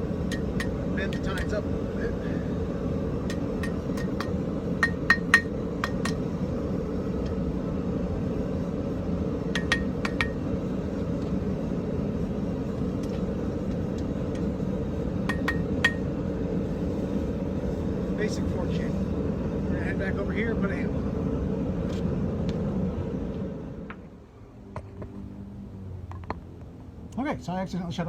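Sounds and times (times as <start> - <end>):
low rumble: 0.0 - 27.2
hammer striking iron on anvil: 0.3 - 1.6, 3.3 - 6.2, 9.5 - 10.4, 15.2 - 16.1.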